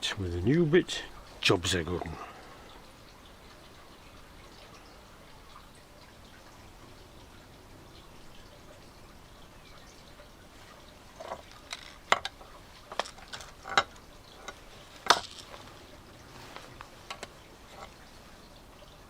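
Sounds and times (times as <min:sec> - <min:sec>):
small metal tools clinking: 0:11.2 - 0:15.7.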